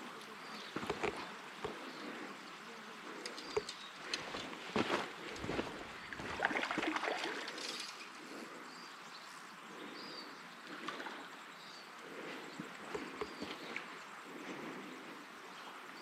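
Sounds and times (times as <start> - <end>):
river flowing: 3.4 - 8.0.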